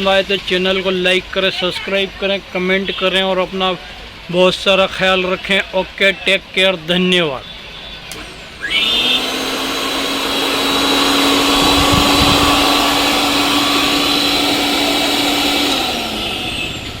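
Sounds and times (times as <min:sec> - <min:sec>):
mixer grinder motor whirring: 0:08.1 - 0:17.0.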